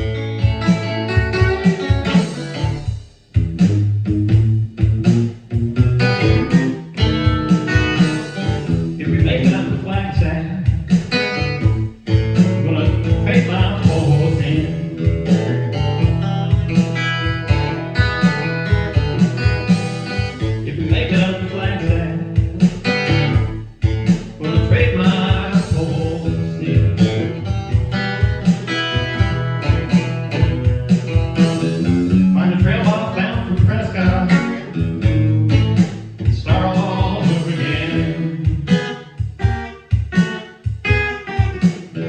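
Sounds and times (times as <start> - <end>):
plucked bass pulse: 0.0 - 40.1
acoustic blues guitar: 0.0 - 42.0
person singing: 7.1 - 11.0, 12.4 - 15.7, 20.1 - 23.4, 24.4 - 27.5, 31.4 - 35.0, 36.2 - 39.7.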